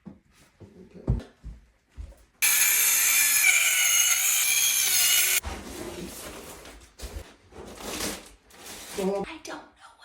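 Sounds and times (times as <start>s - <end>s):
power saw cutting wood: 2.4s - 5.4s
scraping and handling sounds: 5.4s - 9.2s.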